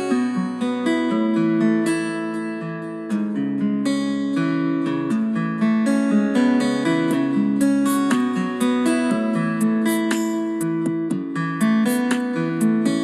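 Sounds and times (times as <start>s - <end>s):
acoustic guitar ringtone: 0.0s - 13.0s.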